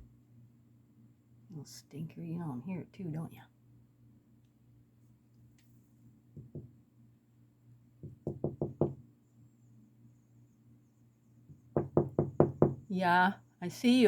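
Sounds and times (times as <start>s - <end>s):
knocking: 6.4s - 6.7s, 8.0s - 9.0s, 11.5s - 12.8s.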